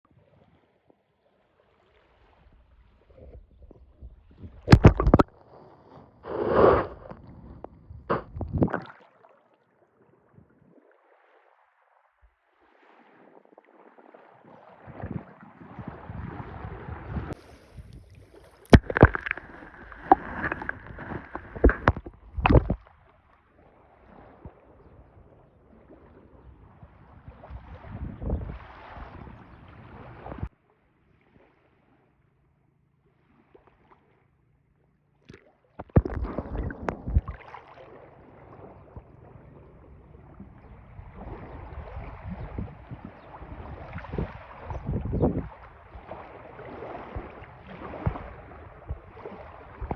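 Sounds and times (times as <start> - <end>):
sea water sloshing and splashing: 0.2 - 30.6, 35.2 - 49.9
water slaps: 4.6 - 5.3, 17.3 - 23.0, 35.3 - 39.2, 41.1 - 49.9.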